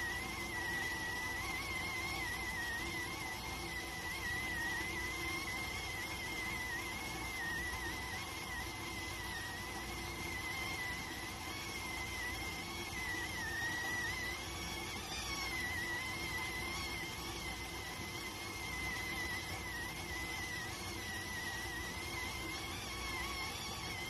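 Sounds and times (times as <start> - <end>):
high cooking whistle: 0.0 - 24.0.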